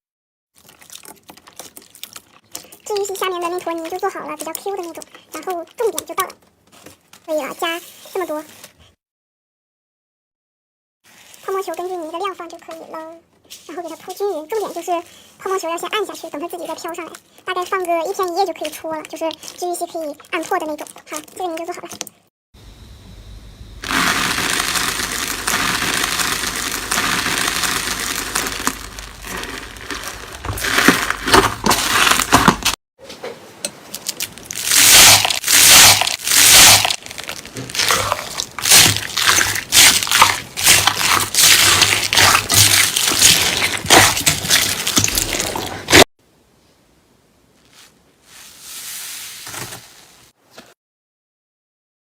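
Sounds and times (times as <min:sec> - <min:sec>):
foam slime crackling when squeezed: 0:23.8 - 0:32.8, 0:34.2 - 0:46.0.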